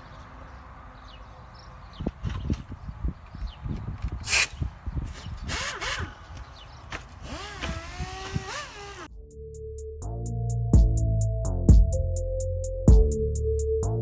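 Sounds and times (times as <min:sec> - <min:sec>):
short bursts of hiss: 0:04.2 - 0:04.6
sander spinning up: 0:07.2 - 0:09.1.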